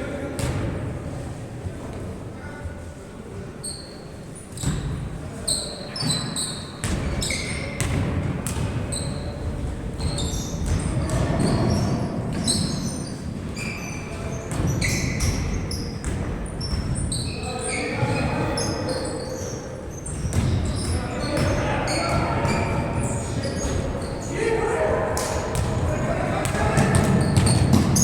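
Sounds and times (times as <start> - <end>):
sneakers squeaking on floor: 3.6 - 24.4, 25.2 - 28.0
basketball bouncing: 6.8 - 12.0, 14.5 - 17.1, 20.1 - 22.8, 25.2 - 28.0.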